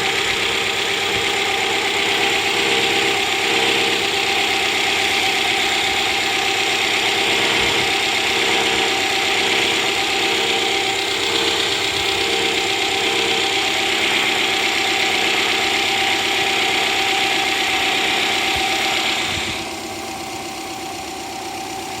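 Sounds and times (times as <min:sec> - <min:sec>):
car engine idling: 0:00.0 - 0:22.0
loud high-pitched whine: 0:00.0 - 0:22.0.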